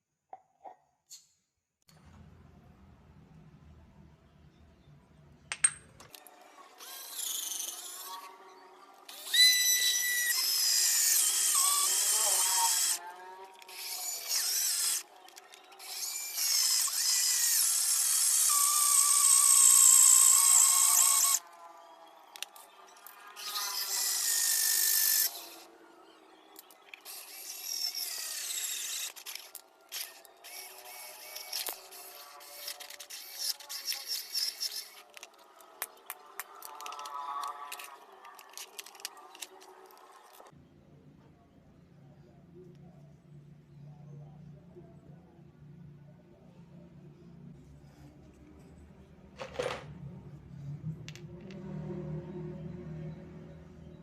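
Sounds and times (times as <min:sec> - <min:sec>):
hand-held power tool running: 0:09.1 - 0:15.0, 0:15.7 - 0:21.4, 0:23.4 - 0:25.6, 0:27.0 - 0:35.3.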